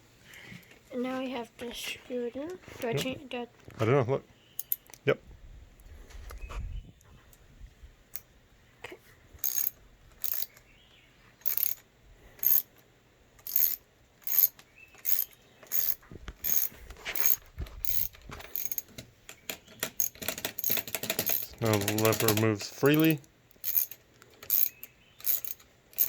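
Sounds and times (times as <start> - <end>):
socket ratchet clicking: 4.6 - 5.0, 9.4 - 10.6, 11.4 - 11.8, 12.4 - 12.7, 13.4 - 26.0.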